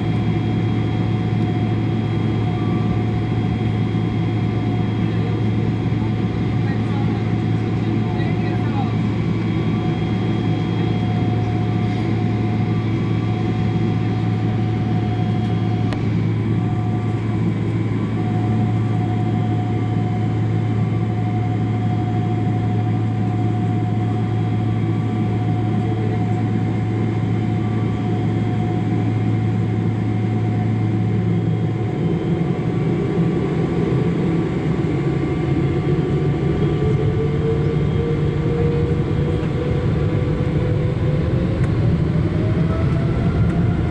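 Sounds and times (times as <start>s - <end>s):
jet engines humming: 0.0s - 43.9s
jet engines spooling up whine: 0.0s - 43.9s.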